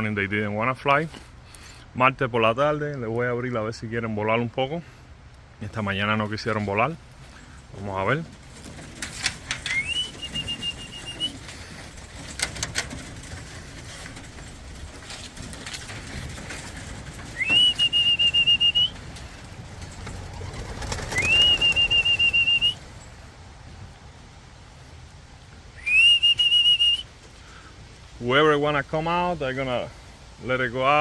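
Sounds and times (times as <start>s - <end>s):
trilling whistle blasts: 9.7s - 11.4s, 17.4s - 19.0s, 21.1s - 22.8s, 25.8s - 27.1s.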